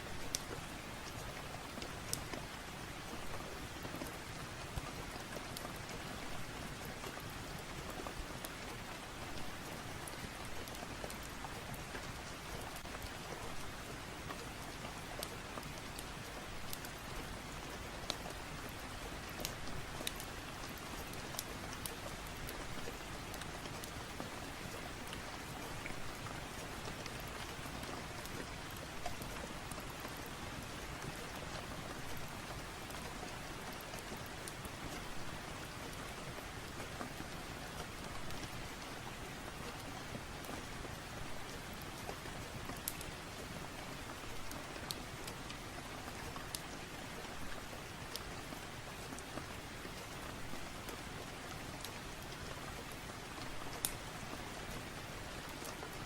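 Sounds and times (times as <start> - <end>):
steady rain falling: 0.0 - 56.0
wood fire crackling: 8.4 - 39.8, 40.4 - 55.9.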